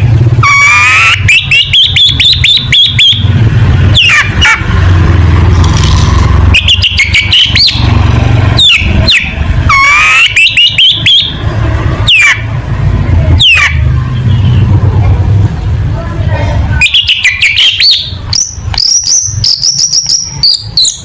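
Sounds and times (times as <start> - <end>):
bird whistling and chattering: 0.4 - 4.7, 6.4 - 11.4, 12.0 - 12.5, 13.4 - 14.7, 16.8 - 21.0.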